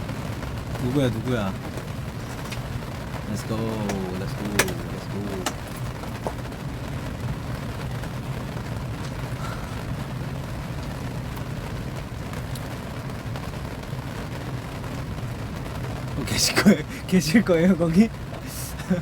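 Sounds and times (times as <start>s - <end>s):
steady rain: 0.0s - 19.0s.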